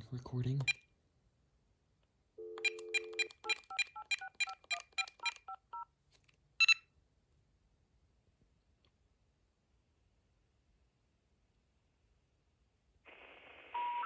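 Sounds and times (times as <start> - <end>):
touch-tone dialing digits: 0.6 - 0.8, 2.4 - 5.8, 6.6 - 6.8
phone dial tone: 2.4 - 5.8.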